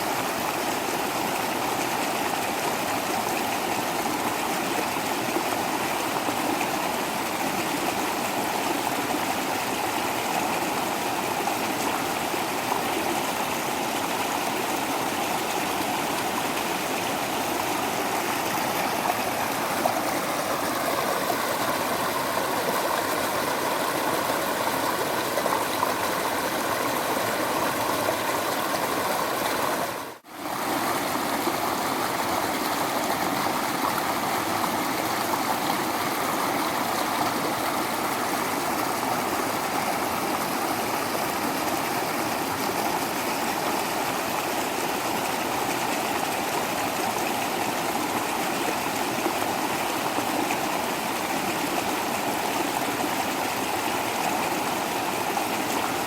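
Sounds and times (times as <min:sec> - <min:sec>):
waterfall rushing: 0:09.2 - 0:46.9.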